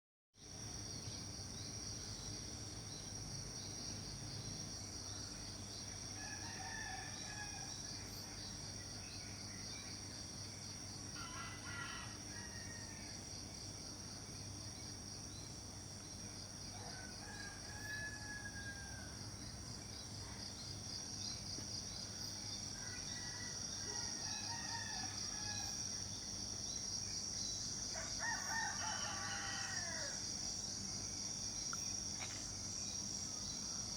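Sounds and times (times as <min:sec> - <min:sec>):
high-pitched insect chorus: 0:00.4 - 0:33.9
roosters crowing: 0:06.2 - 0:07.7, 0:11.2 - 0:13.1, 0:16.8 - 0:19.2, 0:22.8 - 0:25.9, 0:27.9 - 0:30.3.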